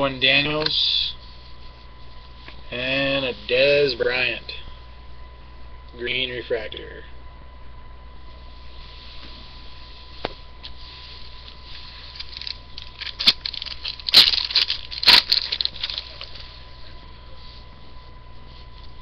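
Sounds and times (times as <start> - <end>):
foil pack crinkling and tearing: 11.5 - 16.6.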